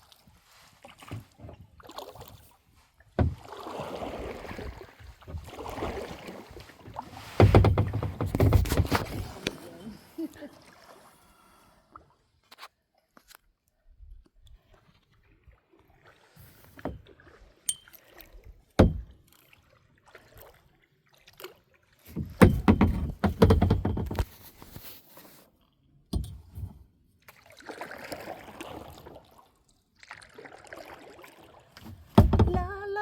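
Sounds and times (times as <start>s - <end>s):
water splashing and sloshing: 0.0s - 33.0s
knocks: 7.4s - 9.2s, 18.8s - 19.1s, 22.4s - 24.3s, 32.1s - 32.8s.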